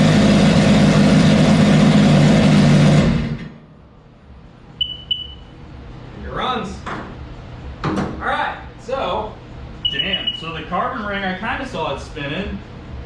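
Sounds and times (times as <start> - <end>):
beeper chirps: 4.8 - 5.5, 9.8 - 10.6.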